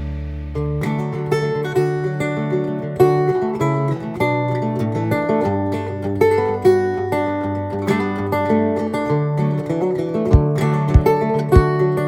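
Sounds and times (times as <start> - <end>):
steady low beat: 0.0 - 1.0, 10.4 - 11.7
strummed acoustic guitar: 0.0 - 12.0.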